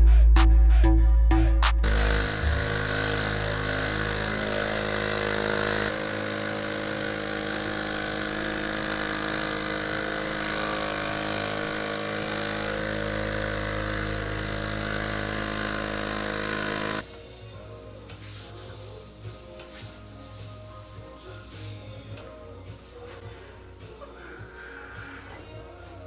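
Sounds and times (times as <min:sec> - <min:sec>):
synth drone: 0:01.8 - 0:17.0.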